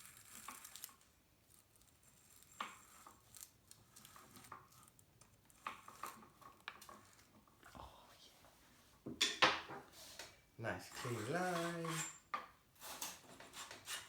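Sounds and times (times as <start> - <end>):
marker scratching: 10.9 - 12.2.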